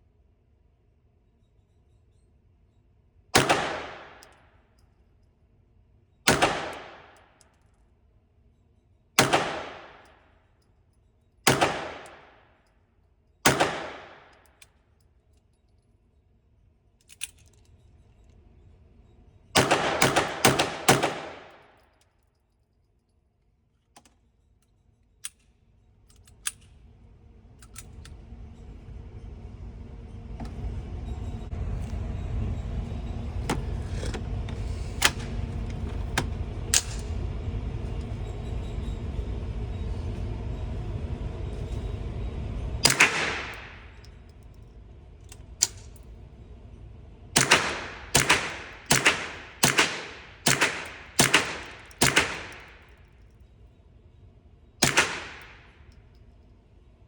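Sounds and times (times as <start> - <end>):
suppressed pistol shots: 3.4 - 4.3, 6.3 - 7.2, 9.2 - 10.1, 11.5 - 12.3, 13.5 - 14.3, 19.6 - 21.5, 42.8 - 43.9, 47.4 - 52.8, 54.8 - 55.7
low rumble: 26.8 - 53.3.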